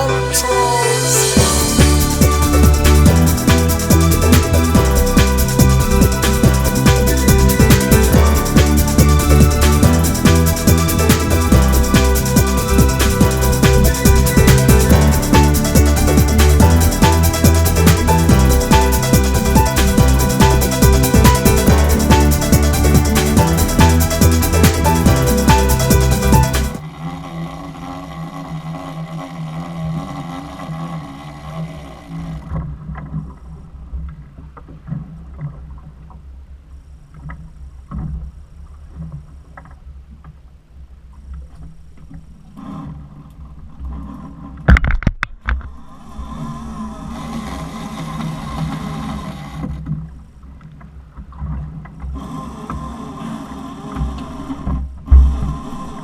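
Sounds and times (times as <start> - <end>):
boat engine running: 0.0 - 33.5.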